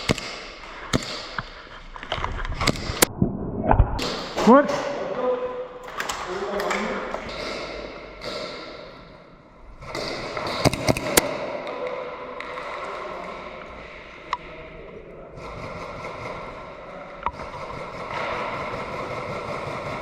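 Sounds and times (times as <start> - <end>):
airsoft gun shots: 0.0 - 1.7, 2.6 - 3.1, 9.9 - 11.6.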